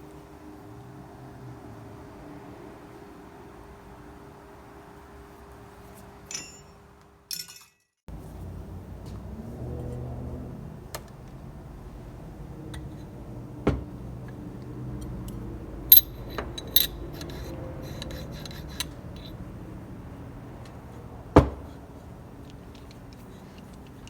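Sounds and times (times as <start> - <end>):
metal parts clinking: 6.3 - 7.9, 15.9 - 19.4.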